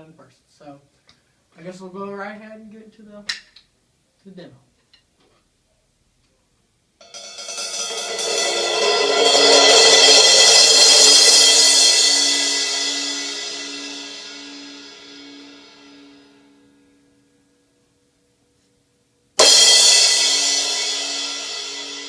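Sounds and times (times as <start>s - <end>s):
crash cymbal ringing: 7.0s - 17.8s, 19.4s - 22.0s.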